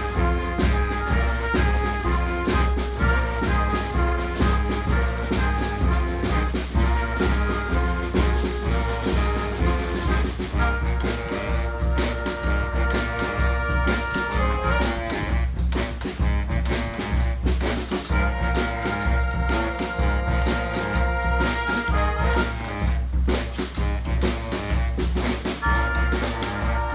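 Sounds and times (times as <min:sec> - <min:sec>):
deep bass line: 0:00.0 - 0:17.6
brass band playing: 0:00.0 - 0:26.9
steady drum beat: 0:00.0 - 0:26.9.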